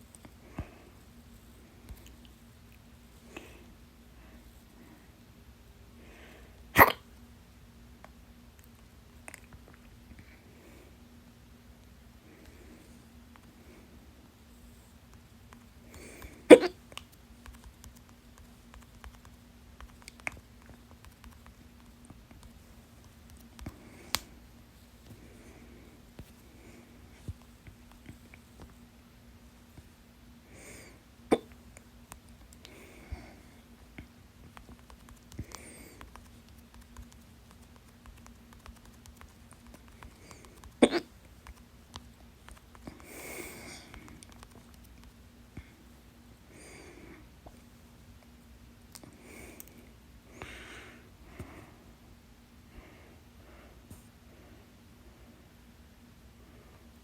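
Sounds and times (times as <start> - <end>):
person hiccuping: 6.8 - 7.0, 16.5 - 16.8, 40.7 - 41.1.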